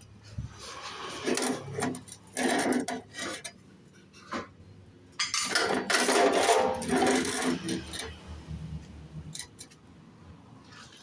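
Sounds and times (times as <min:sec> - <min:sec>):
metal scraping and clinking on steel: 0:00.5 - 0:09.8.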